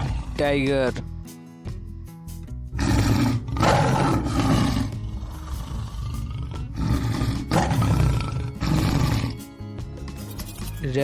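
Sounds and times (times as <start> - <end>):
tiger roaring: 0.0 - 0.7, 2.7 - 9.4.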